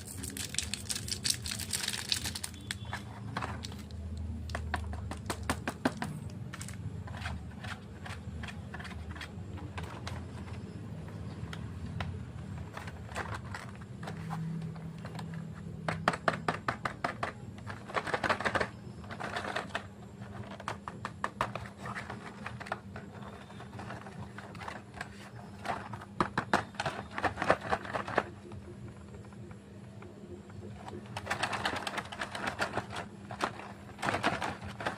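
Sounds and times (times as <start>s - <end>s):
plastic wrappers crinkling: 0.0s - 5.4s, 30.6s - 34.9s.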